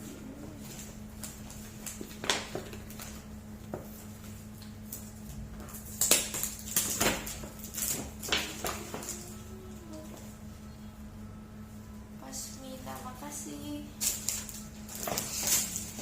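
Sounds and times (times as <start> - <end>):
steady low hum: 0.0 - 16.0
gift wrapping crinkling: 14.0 - 16.0
paper rustling: 14.2 - 16.0.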